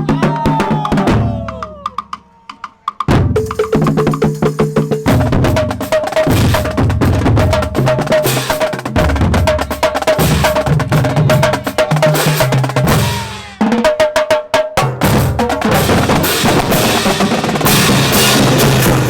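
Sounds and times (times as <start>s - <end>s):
bass drums with shifting pitches: 3.1s - 13.6s, 15.0s - 19.0s
snare drums playing cadence: 3.4s - 5.4s.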